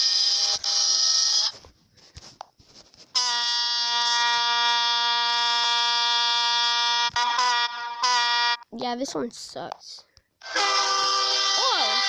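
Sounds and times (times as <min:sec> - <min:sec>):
buzzy horn tone: 0:03.1 - 0:08.7, 0:10.4 - 0:12.0.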